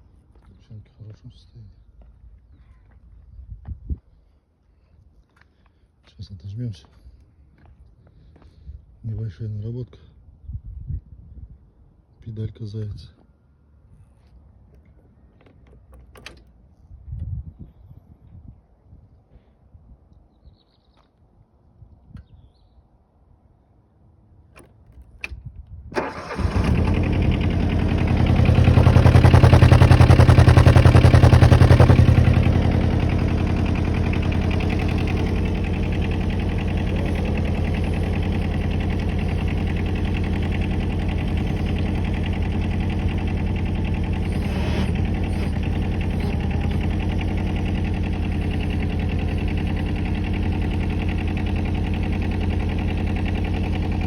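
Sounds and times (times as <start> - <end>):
diesel engine starting and idling: 26.0 - 54.0.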